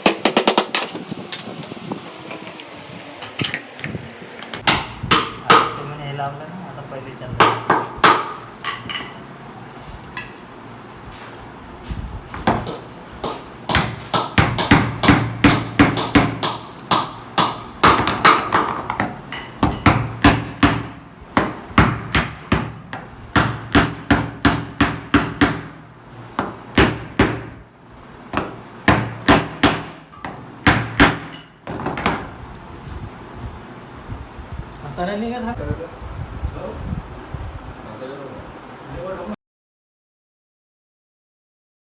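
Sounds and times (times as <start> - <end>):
hammer blows: 4.6 - 6.0, 12.3 - 27.6.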